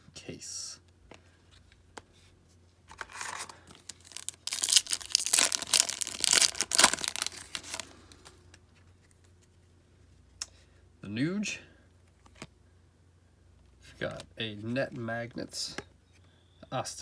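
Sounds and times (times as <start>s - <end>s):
card pack wrapper tearing: 2.9s - 8.3s.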